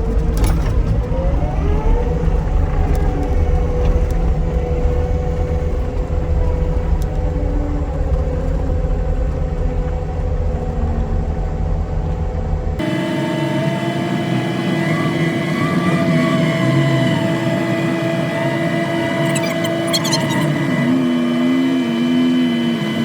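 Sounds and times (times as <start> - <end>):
heavy diesel engine under load: 0.0 - 13.3.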